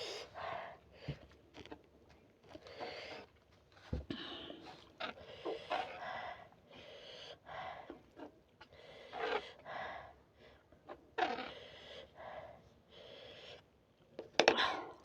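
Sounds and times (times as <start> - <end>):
heavy breaths and sniffs: 4.1 - 13.8.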